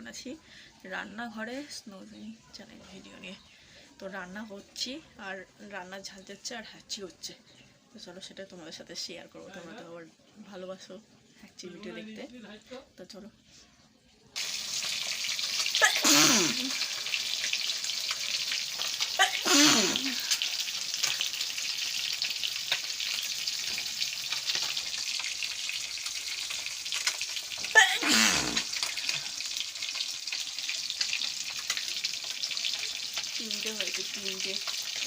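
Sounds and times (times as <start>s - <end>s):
food sizzling in a frying pan: 14.4s - 35.0s
woman sneezing: 15.8s - 16.8s, 19.2s - 20.4s, 27.8s - 28.7s.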